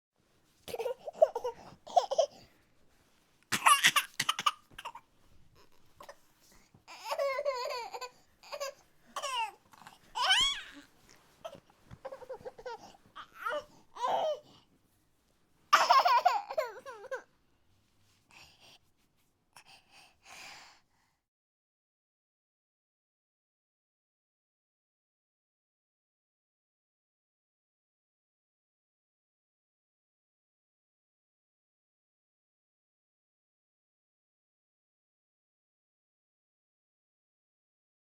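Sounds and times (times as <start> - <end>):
baby whining: 0.7 - 2.5, 3.5 - 5.0, 6.9 - 14.6, 15.8 - 17.3.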